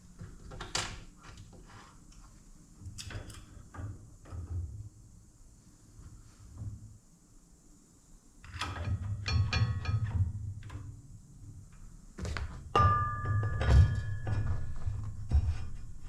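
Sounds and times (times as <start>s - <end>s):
loud metallic clank ringing: 12.8s - 14.8s.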